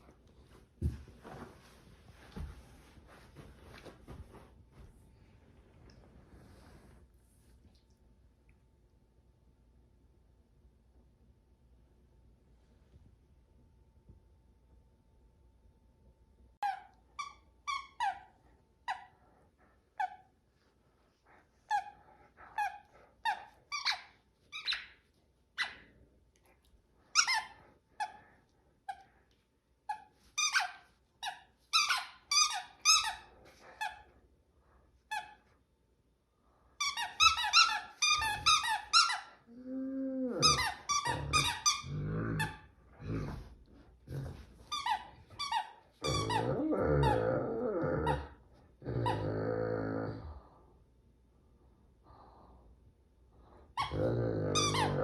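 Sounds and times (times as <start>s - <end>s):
squeaky dog toy squeaking: 16.6s - 19.1s, 22.6s - 25.0s, 27.1s - 28.2s, 29.9s - 34.0s, 36.8s - 39.4s, 40.4s - 42.6s, 44.7s - 47.2s
dog grumbling: 39.5s - 44.6s, 46.0s - 50.4s, 53.8s - 55.0s.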